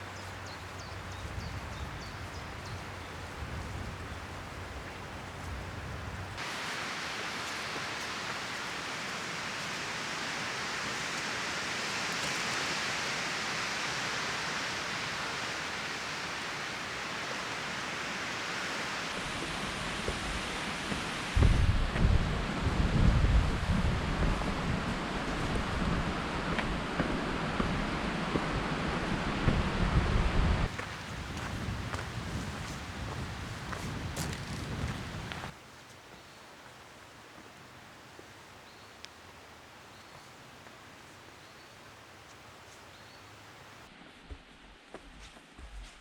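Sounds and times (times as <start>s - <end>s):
wind rumble on microphone: 0.0s - 6.4s, 19.1s - 35.6s
steady rain hiss: 0.0s - 43.9s.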